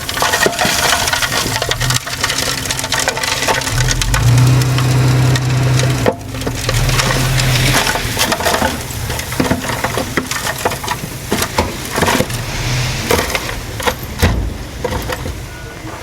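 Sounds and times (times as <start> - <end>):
diesel machinery engine running: 0.0 - 16.0
soil and debris cracking: 0.0 - 16.0.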